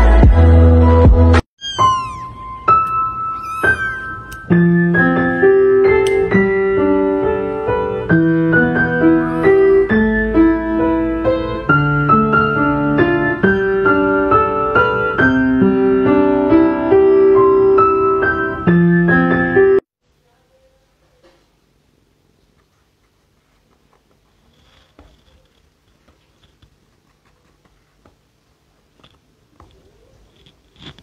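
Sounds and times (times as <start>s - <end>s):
piano melody with chords: 0.0s - 19.8s.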